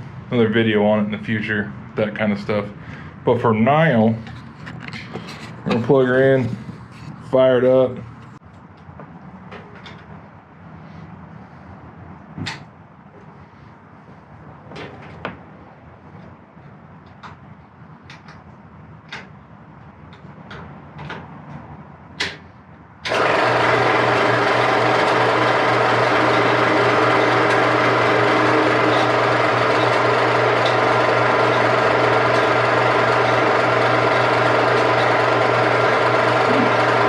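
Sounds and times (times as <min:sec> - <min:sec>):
bandsaw motor humming: 0:23.1 - 0:37.0.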